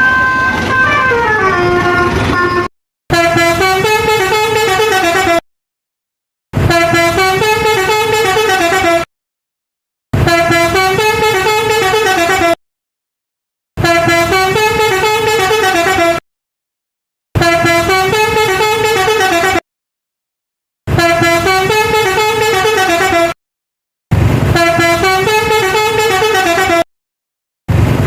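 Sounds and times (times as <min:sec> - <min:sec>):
musical horn playing a tune: 0:00.0 - 0:05.4, 0:06.6 - 0:09.1, 0:10.2 - 0:12.6, 0:13.8 - 0:16.2, 0:17.4 - 0:19.6, 0:20.9 - 0:23.4, 0:24.6 - 0:26.9.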